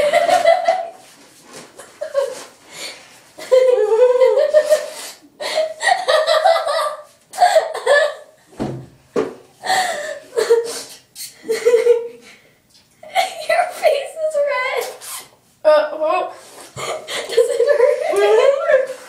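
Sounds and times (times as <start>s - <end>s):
people laughing: 0.0s - 1.0s, 3.4s - 4.9s, 16.8s - 19.0s.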